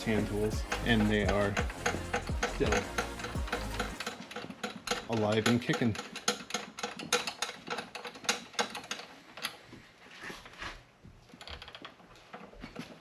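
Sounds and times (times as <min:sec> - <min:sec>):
small metal bolts clicking: 0:03.6 - 0:09.6.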